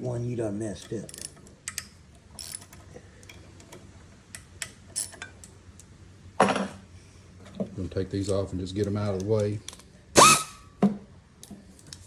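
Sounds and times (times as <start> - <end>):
ratchet wrench clicking: 1.1 - 2.8, 10.2 - 10.6.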